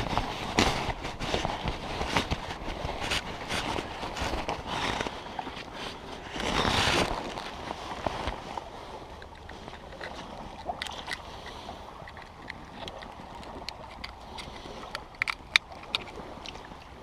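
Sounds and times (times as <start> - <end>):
shellfish shells clicking together: 9.2 - 16.9.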